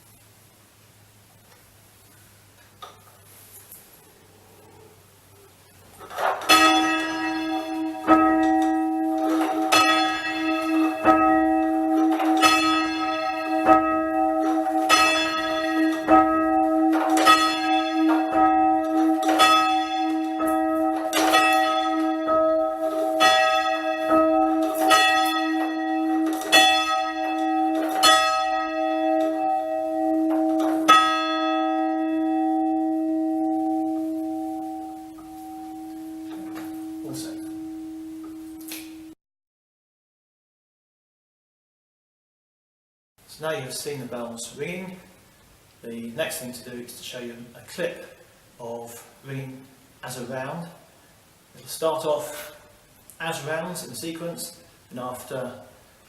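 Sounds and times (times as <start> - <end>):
church bell ringing: 6.0 - 39.2
bell hum ringing on: 6.5 - 39.2.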